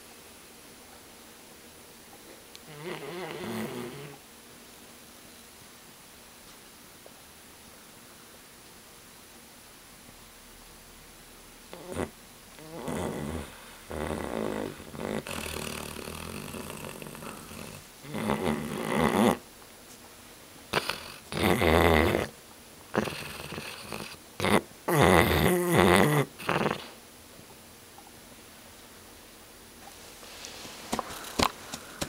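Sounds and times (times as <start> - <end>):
dog snoring loudly: 2.6 - 4.2, 11.7 - 19.4, 20.7 - 27.0.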